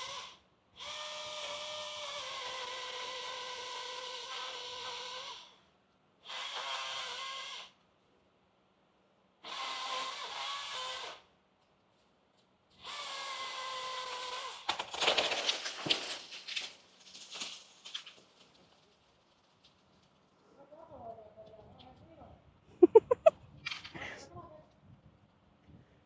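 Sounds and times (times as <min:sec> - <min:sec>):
tree cracking and crashing down: 0:14.6 - 0:20.5.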